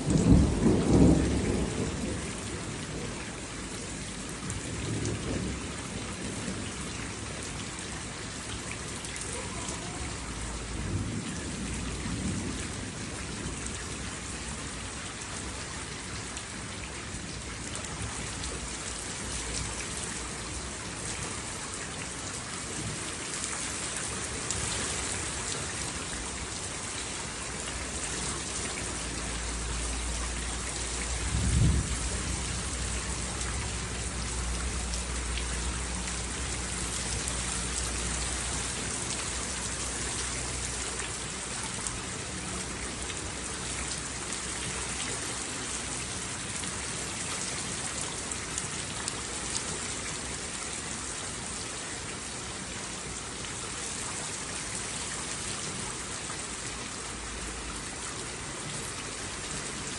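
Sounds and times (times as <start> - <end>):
thunder rumbling: 0.0 - 3.6, 31.0 - 34.2
steady rain falling: 0.0 - 59.9.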